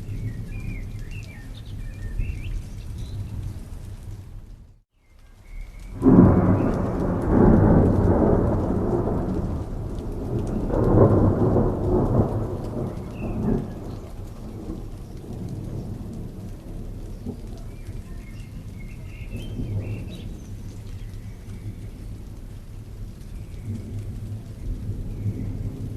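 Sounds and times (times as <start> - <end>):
steady rain: 0.0 - 25.9
thunder rolling: 5.8 - 25.9.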